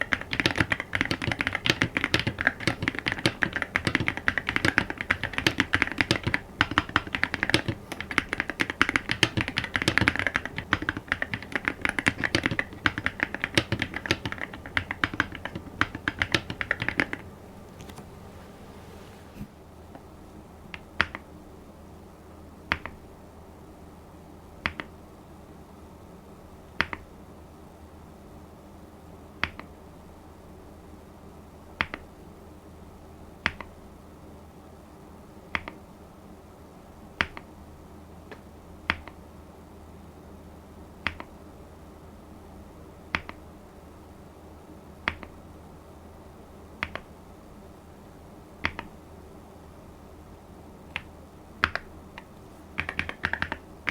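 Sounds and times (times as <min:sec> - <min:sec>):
keyboard key clicks: 0:00.0 - 0:19.5, 0:50.9 - 0:53.9.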